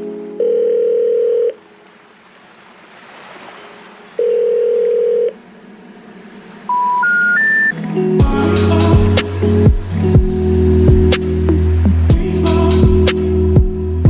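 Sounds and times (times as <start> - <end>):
held synth tone: 6.6 - 12.1
short rising beeps: 6.7 - 7.8.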